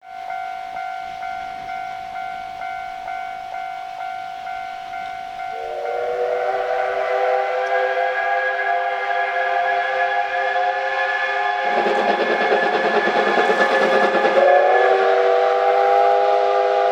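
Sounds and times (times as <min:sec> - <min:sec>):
steam locomotive whistle: 0:04.0 - 0:16.9.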